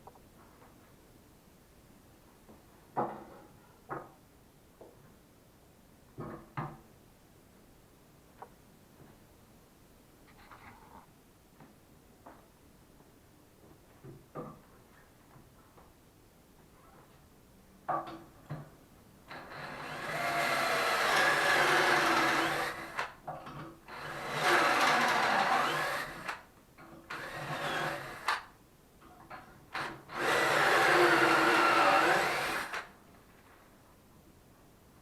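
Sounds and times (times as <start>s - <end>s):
electric drill running: 19.3s - 23.1s, 23.9s - 26.4s, 27.1s - 28.4s, 29.8s - 32.9s.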